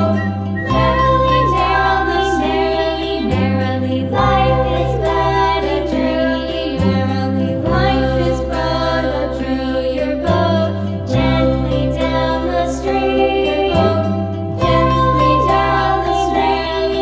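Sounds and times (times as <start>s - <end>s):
sustained bass notes: 0.0s - 6.1s
song with sung melody: 0.0s - 17.0s.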